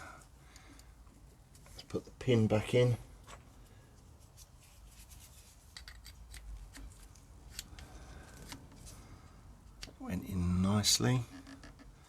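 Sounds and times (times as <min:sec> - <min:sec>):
light metallic clicks and rubbing: 0:03.2 - 0:09.0.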